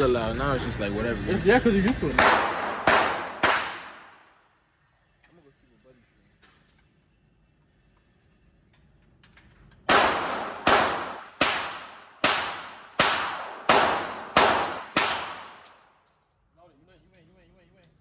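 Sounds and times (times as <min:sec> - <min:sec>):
gunshots with ringing echo: 0:02.1 - 0:04.2, 0:09.9 - 0:15.7.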